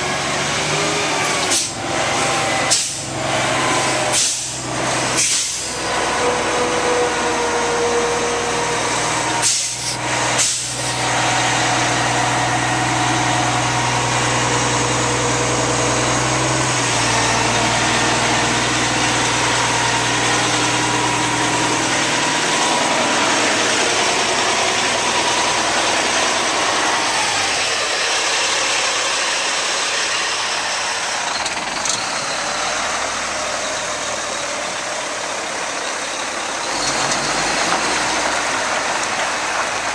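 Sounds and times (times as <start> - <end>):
diesel truck engine idling: 0.0 - 39.9.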